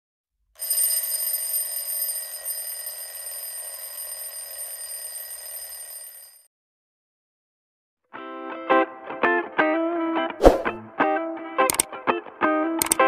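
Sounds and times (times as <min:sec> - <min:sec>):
high shimmering bell ringing: 0:00.6 - 0:06.5.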